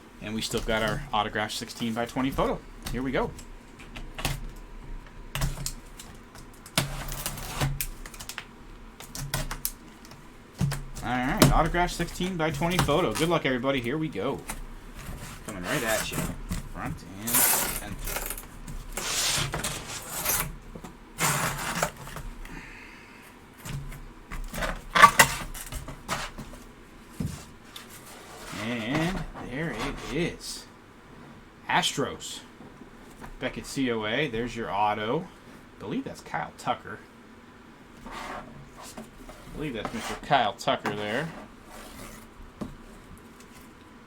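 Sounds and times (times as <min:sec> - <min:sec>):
packaging rustling and scraping: 0:00.3 - 0:22.4, 0:23.4 - 0:30.3, 0:40.9 - 0:43.8.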